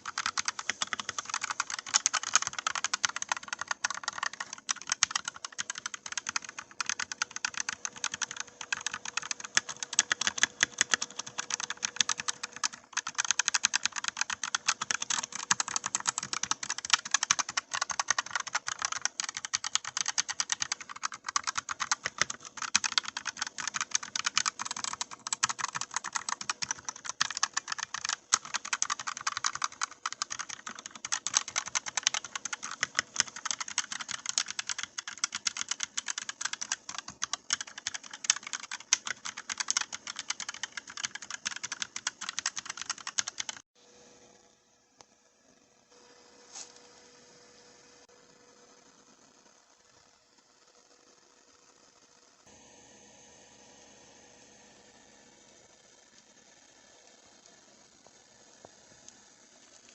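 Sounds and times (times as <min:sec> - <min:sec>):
fast keyboard typing: 0:00.0 - 0:43.7.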